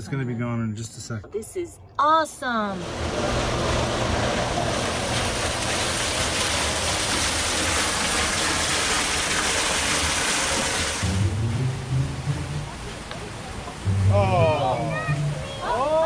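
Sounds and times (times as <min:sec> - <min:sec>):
steady rushing noise: 0:10.0 - 0:15.6.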